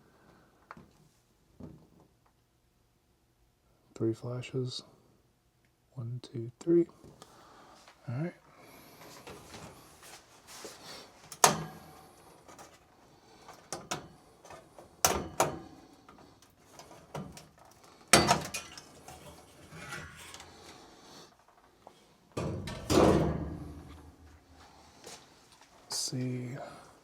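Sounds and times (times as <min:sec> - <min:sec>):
knocks on furnace: 0:22.4 - 0:23.9.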